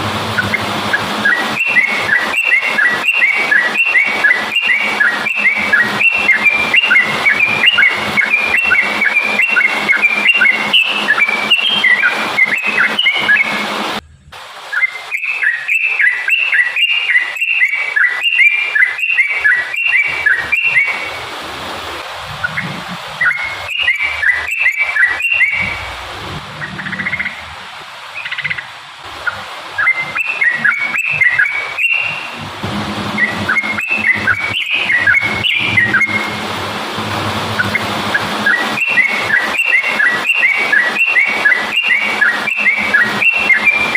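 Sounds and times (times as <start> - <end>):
low background hum: 0.0 - 15.5, 20.0 - 43.9
bird singing whistled notes: 0.4 - 13.8, 14.7 - 21.2, 23.2 - 26.0, 29.8 - 32.4, 33.0 - 36.4, 37.6 - 43.9.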